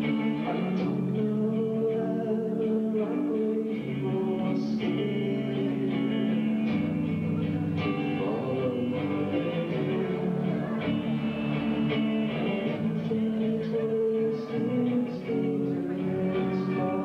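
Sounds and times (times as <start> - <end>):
electric guitar chords: 0.0 - 17.0
bass and drums: 3.7 - 17.0.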